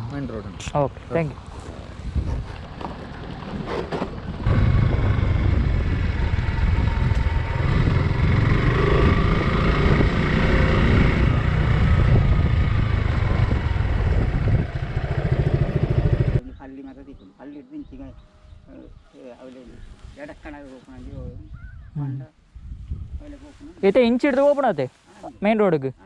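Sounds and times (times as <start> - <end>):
wind rumble on microphone: 1.0 - 19.1, 19.7 - 24.2
motorcycle engine running: 2.3 - 16.4.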